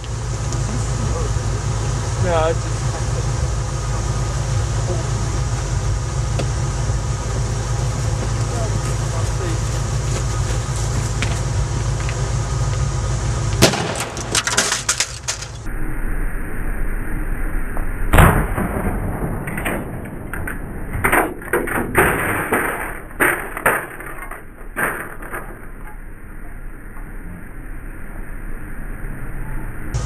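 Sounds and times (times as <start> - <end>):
sharp bang: 13.5 - 15.8, 18.1 - 24.0
debris cracking and clattering: 13.6 - 15.7, 19.5 - 26.1.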